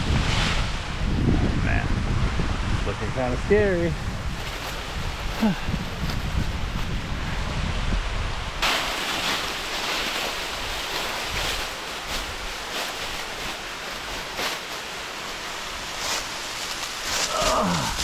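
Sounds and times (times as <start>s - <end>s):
wind rumble on microphone: 0.0s - 14.5s, 15.4s - 18.0s
waterfall rushing over rock: 8.6s - 12.0s.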